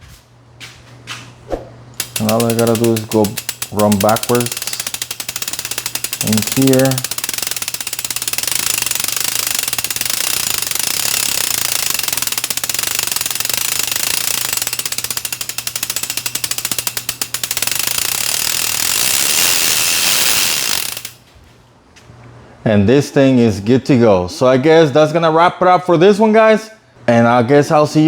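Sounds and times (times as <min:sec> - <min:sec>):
bike freehub ratchet clicking: 0:02.0 - 0:21.2.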